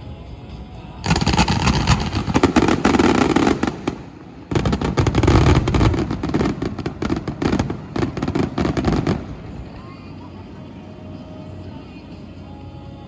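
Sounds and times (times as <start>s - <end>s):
deep rumble of fireworks: 0.2s - 11.6s
fireworks shell bursts and crackling: 1.0s - 10.1s.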